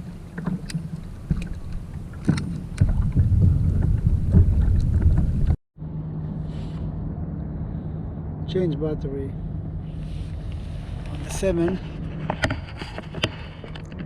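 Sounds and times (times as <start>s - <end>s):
wind buffeting microphone: 0.0s - 5.6s
steady low hum: 0.0s - 13.7s
knocks against hull: 2.2s - 5.6s.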